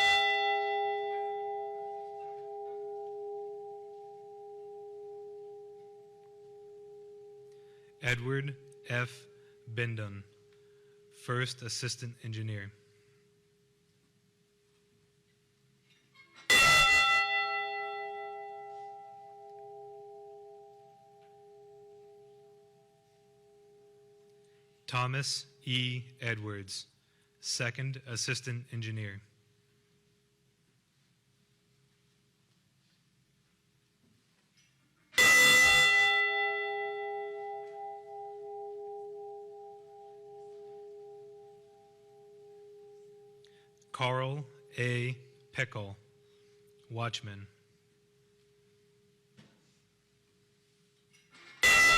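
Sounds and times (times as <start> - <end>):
memorial bell tolling: 0.0 - 10.2, 16.5 - 24.3, 35.2 - 45.8, 51.5 - 51.9.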